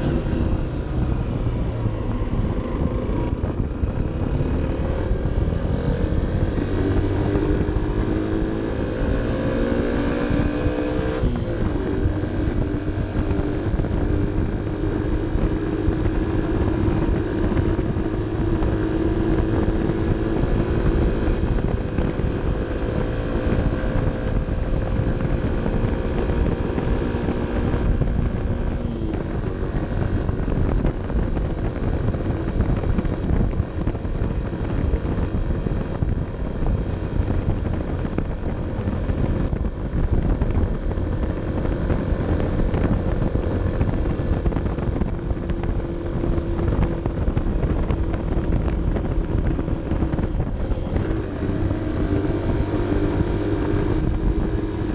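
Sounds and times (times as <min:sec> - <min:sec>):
motorcycle engine revving: 0:00.0 - 0:54.9
wind rumble on microphone: 0:00.0 - 0:54.9.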